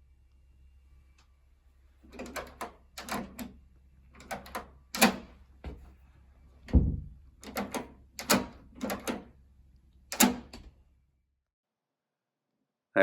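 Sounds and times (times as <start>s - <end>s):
door lock clicks and rattling: 2.1s - 5.4s, 6.7s - 9.4s, 10.1s - 10.8s
heavy thump: 6.7s - 7.1s.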